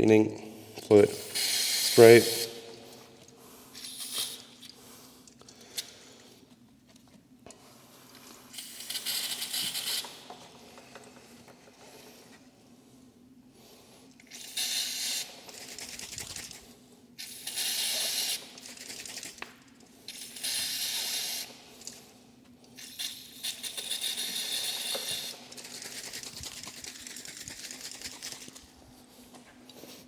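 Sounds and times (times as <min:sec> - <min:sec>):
aerosol spray hissing: 0:01.2 - 0:02.6.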